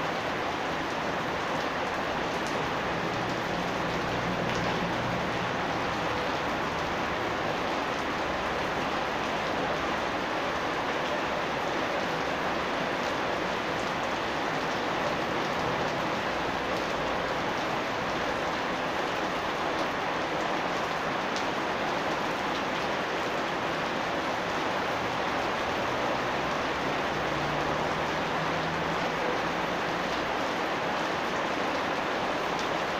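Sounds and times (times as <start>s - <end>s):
steady rain falling: 0.0s - 32.9s
raindrop ticks: 2.4s - 5.1s.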